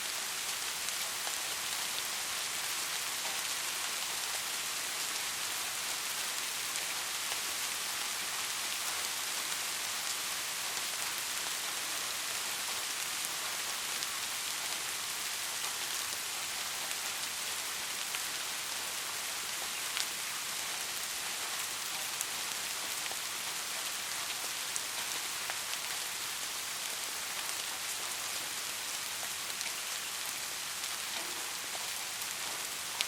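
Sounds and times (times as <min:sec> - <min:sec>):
heavy rain falling: 0:00.2 - 0:33.0
individual raindrops: 0:15.5 - 0:33.0.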